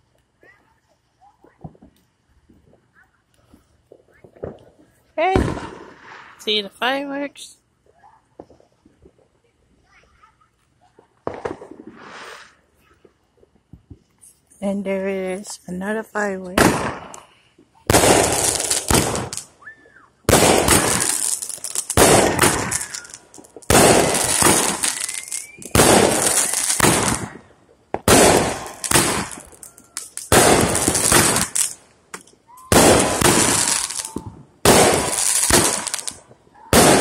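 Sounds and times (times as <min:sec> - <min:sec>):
fireworks bangs with crackle: 0:00.4 - 0:06.9, 0:07.8 - 0:10.3, 0:10.9 - 0:14.1, 0:16.5 - 0:37.0.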